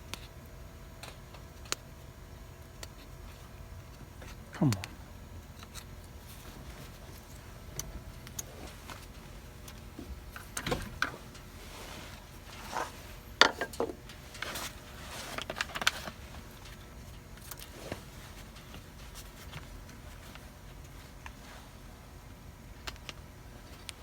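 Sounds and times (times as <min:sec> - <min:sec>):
tools and parts clinking: 0:12.4 - 0:16.8.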